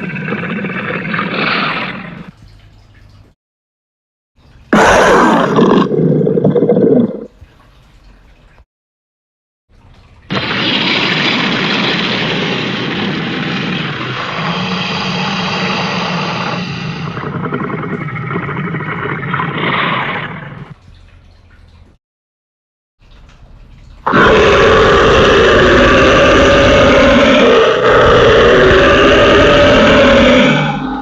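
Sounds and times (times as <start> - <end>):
dinosaur roar: 4.7 - 7.3, 10.3 - 20.7, 24.1 - 31.0.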